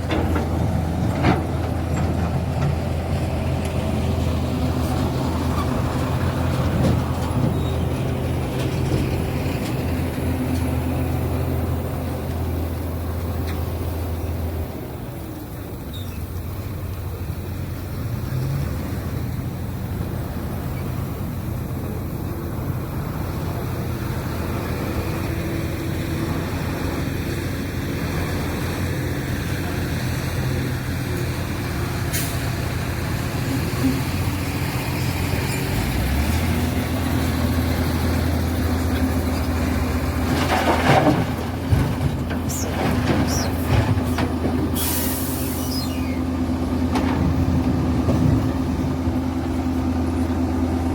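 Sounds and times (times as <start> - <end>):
excavator diesel engine running: 0.0 - 50.9
short loud hiss: 44.8 - 46.2.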